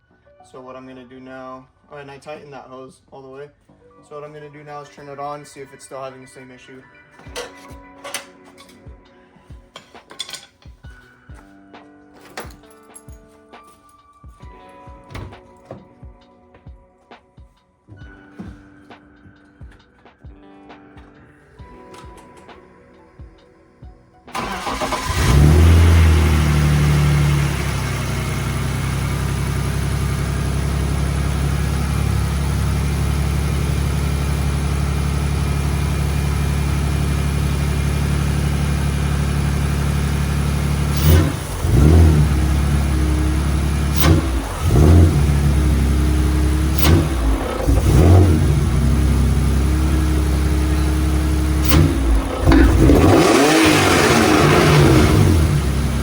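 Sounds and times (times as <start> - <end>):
car engine starting and idling: 24.3 - 56.0
engine throttle blips: 24.4 - 56.0.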